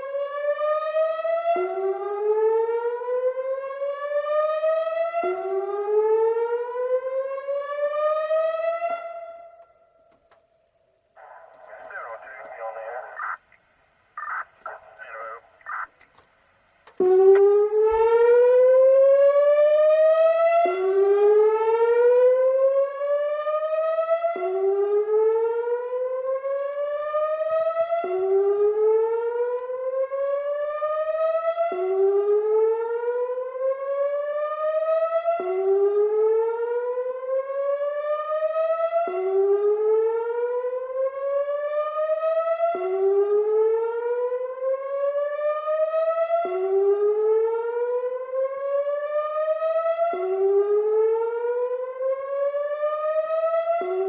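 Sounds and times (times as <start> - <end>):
electronic siren whooping: 30.3 - 54.0.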